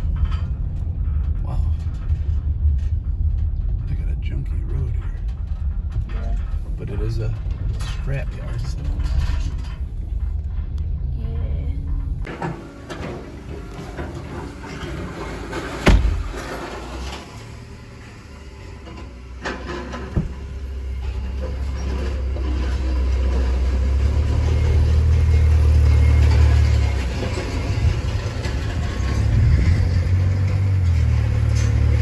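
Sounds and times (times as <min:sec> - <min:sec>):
vehicle rumble on bumpy road: 0:00.0 - 0:32.0
sharp knocks: 0:15.6 - 0:17.0, 0:19.8 - 0:20.7.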